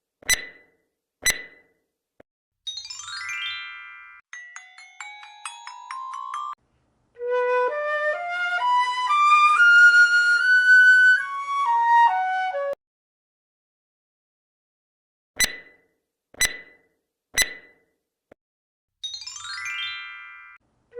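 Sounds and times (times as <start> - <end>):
glockenspiel notes: 2.7 - 6.6, 19.0 - 20.6
flute melody: 7.2 - 12.8.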